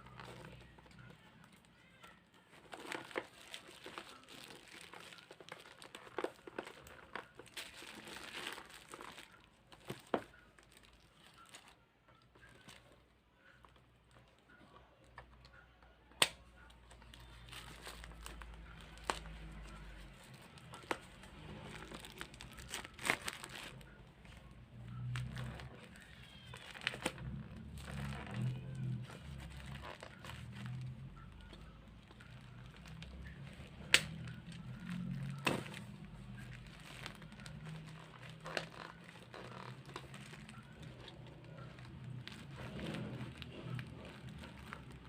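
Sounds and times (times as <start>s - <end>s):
packaging crinkling and rustling: 0.0s - 15.2s, 16.9s - 45.0s.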